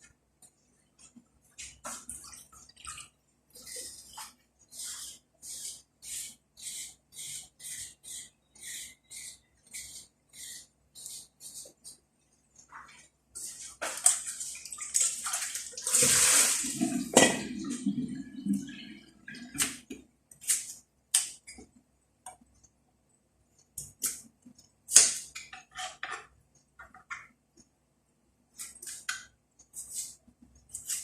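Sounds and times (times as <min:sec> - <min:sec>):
liquid splashing in a pan: 0:13.6 - 0:18.0.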